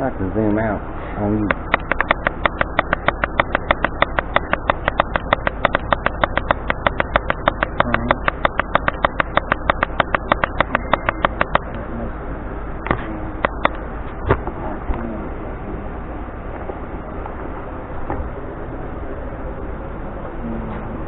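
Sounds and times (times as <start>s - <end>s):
rapid even clicking: 1.4s - 11.8s, 12.8s - 15.1s.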